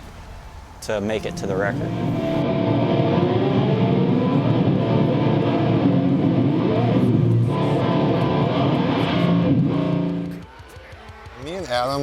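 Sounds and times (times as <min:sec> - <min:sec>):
guitar music: 0:01.0 - 0:10.4.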